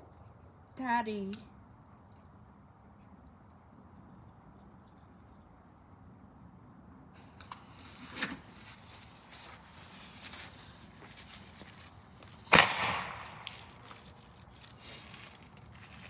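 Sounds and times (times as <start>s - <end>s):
firework fizzing and crackling: 8.7s - 16.0s
firework bang: 12.5s - 15.0s.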